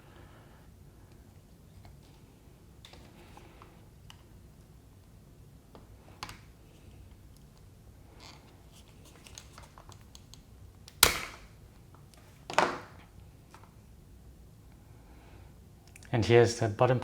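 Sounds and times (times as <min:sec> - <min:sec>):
sharp plastic knocks: 0:10.9 - 0:11.5.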